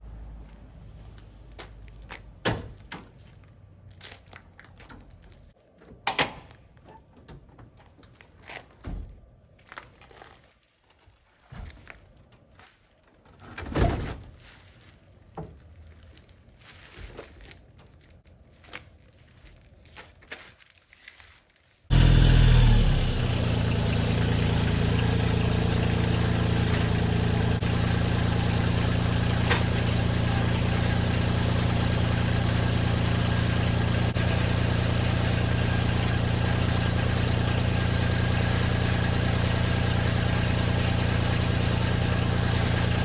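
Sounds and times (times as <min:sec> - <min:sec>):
knocks and clunks: 0:23.0 - 0:31.2.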